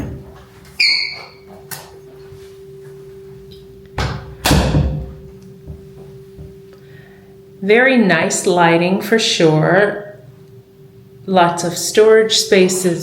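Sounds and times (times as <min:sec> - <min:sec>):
steady low hum: 0:00.0 - 0:13.0
closet squeak: 0:00.7 - 0:01.6.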